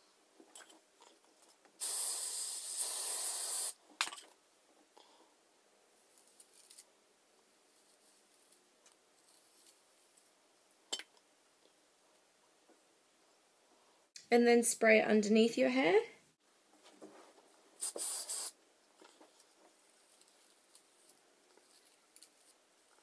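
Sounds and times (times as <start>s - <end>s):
aerosol can spraying: 1.8s - 3.8s, 17.8s - 18.6s
faint handling noises: 18.8s - 23.0s.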